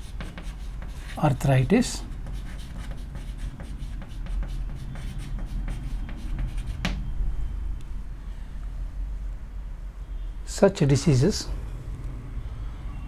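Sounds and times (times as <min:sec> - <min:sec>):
pen scratching on paper: 0:00.0 - 0:07.0.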